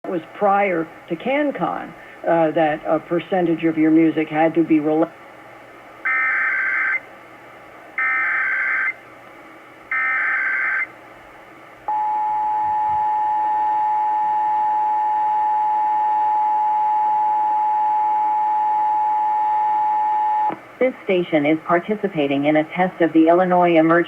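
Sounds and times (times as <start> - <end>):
two-tone attention signal: 11.9 - 16.4.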